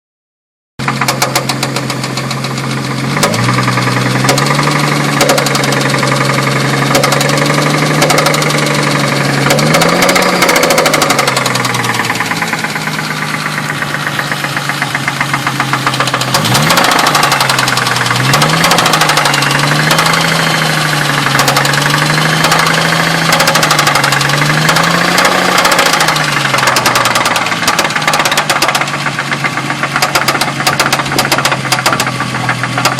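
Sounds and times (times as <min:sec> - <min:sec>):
car engine running: 0:00.8 - 0:32.9
rapid engine knock: 0:00.8 - 0:32.9.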